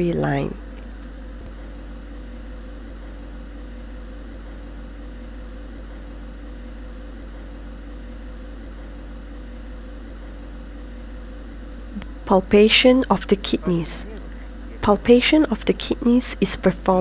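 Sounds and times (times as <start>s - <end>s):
low hum: 11.8s - 17.0s.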